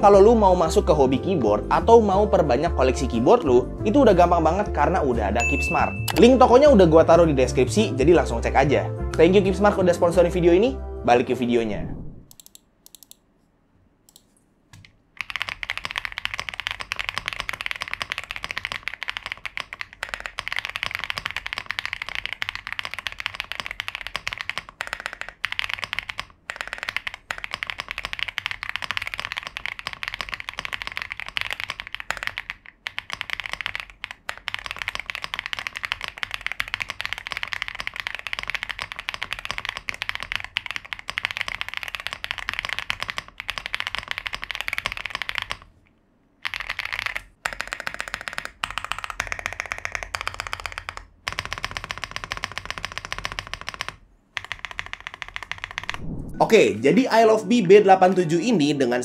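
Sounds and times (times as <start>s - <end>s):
typing on mechanical keyboard: 14.8s - 45.7s, 46.4s - 56.0s.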